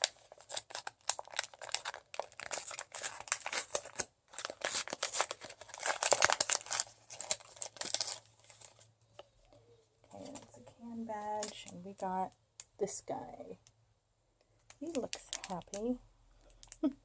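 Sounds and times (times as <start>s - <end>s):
packaging crackling and rustling: 0.0s - 11.8s, 14.6s - 16.8s.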